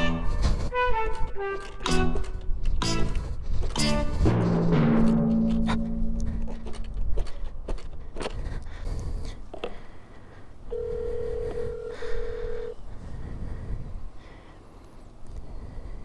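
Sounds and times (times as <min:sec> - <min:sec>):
phone ringback tone: 0:10.7 - 0:12.8.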